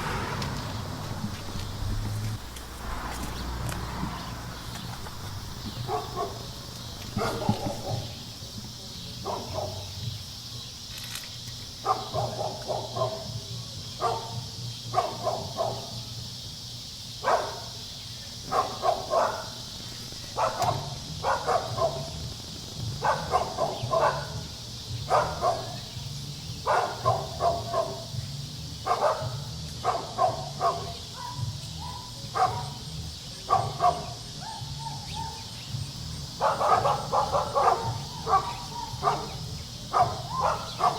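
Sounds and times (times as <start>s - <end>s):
background hiss: 0.0s - 40.9s
dog barking: 5.6s - 8.2s, 9.2s - 10.0s, 11.8s - 16.1s, 17.2s - 17.8s, 18.4s - 19.7s, 20.3s - 22.3s, 23.0s - 25.9s, 26.6s - 28.2s, 28.8s - 32.8s, 33.4s - 35.5s, 36.4s - 40.9s.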